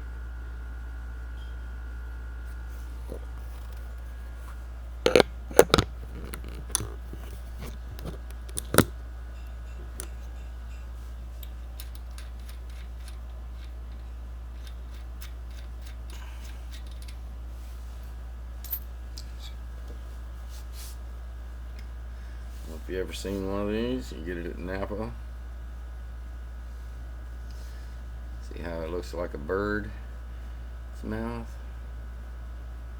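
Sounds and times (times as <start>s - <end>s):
steady low hum: 0.0s - 32.9s
hand tools clicking and knocking: 5.1s - 8.9s.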